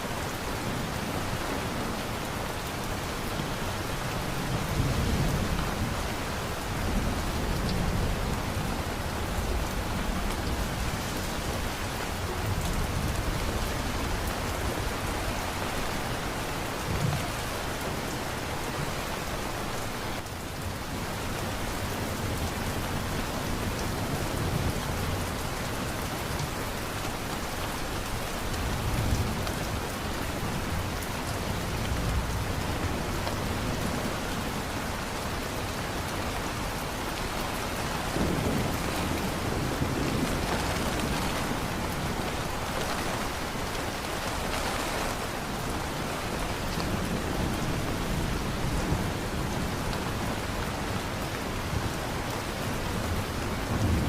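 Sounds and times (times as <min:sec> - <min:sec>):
heavy rain falling: 0:00.0 - 0:54.0
thunder rumbling: 0:37.9 - 0:45.3.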